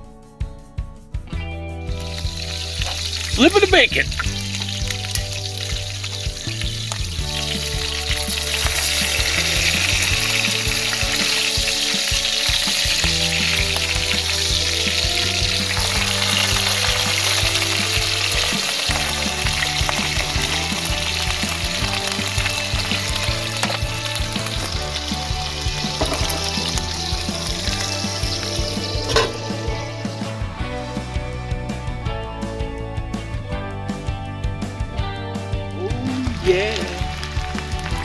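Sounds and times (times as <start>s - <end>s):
bacon sizzling in a frying pan: 2.1s - 3.4s, 4.2s - 30.2s.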